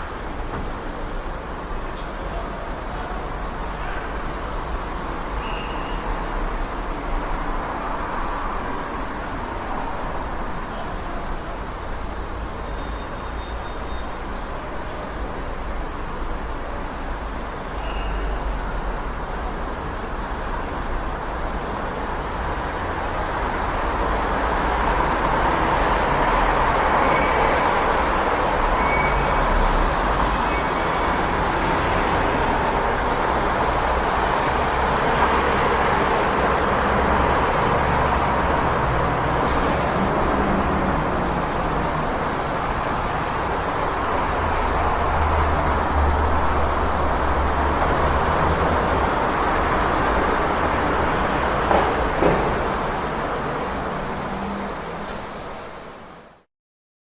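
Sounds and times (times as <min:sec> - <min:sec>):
low traffic rumble: 0:14.0 - 0:56.3
passing cars: 0:14.3 - 0:56.4.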